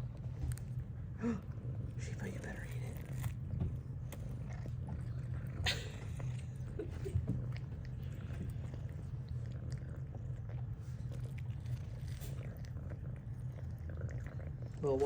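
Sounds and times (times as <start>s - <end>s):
cat chewing and crunching: 0.0s - 15.0s
steady low hum: 0.0s - 15.0s.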